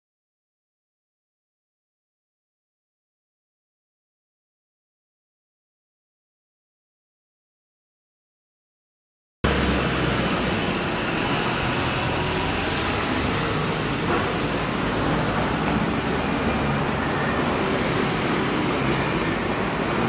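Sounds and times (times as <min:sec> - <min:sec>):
road traffic noise: 0:09.4 - 0:20.0
bus engine running: 0:09.5 - 0:20.0.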